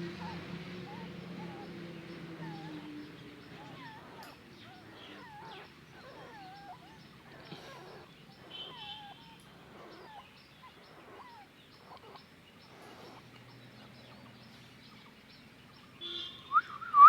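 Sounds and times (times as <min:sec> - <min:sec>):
puppies whining and squeaking: 0:03.6 - 0:08.1.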